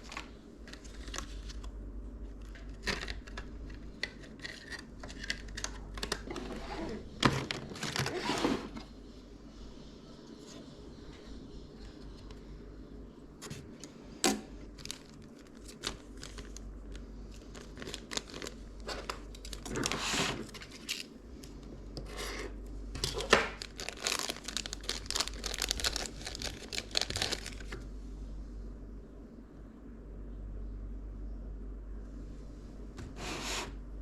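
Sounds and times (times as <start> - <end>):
packaging crinkling and rustling: 0.0 - 8.9, 14.5 - 22.1, 23.0 - 27.8.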